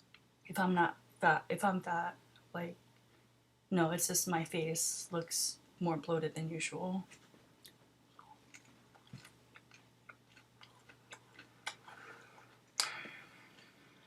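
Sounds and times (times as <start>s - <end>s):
person chewing food: 7.2s - 14.0s
mouth clicks and smacks: 7.6s - 12.0s, 12.7s - 13.1s.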